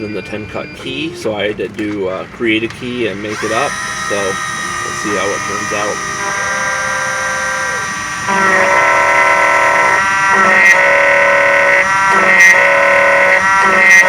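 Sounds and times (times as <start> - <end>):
key cutter motor whining: 3.0 - 14.0.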